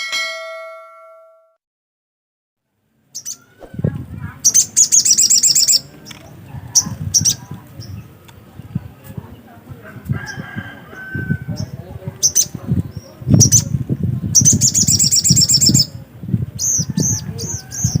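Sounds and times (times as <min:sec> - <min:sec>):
bird high sharp chirps: 0:03.1 - 0:03.8, 0:04.4 - 0:05.9, 0:14.4 - 0:16.0
bird rapid trill: 0:04.4 - 0:05.9, 0:14.4 - 0:15.9.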